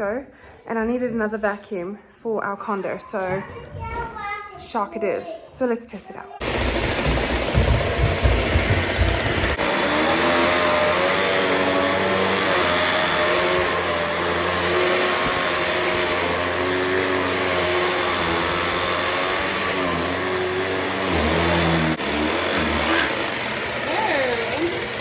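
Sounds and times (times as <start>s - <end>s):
vacuum cleaner motor whine: 6.4s - 25.0s.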